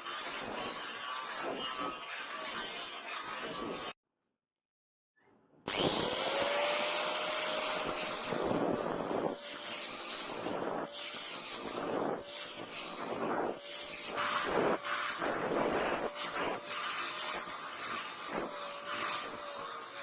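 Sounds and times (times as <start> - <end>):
electric grinder running: 5.7 - 20.0.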